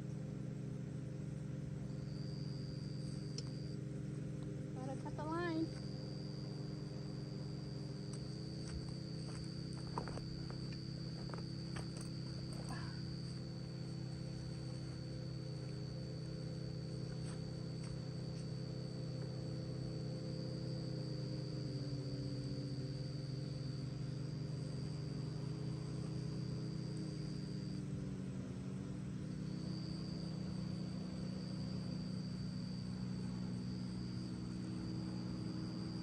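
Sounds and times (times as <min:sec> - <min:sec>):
low hum: 0:00.0 - 0:36.0
insects singing: 0:00.6 - 0:36.0.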